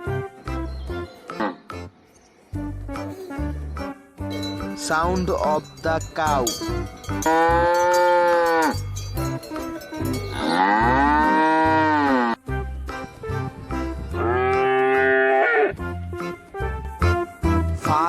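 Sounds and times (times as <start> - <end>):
cow mooing: 7.2 - 8.8, 10.3 - 12.4, 14.1 - 15.8.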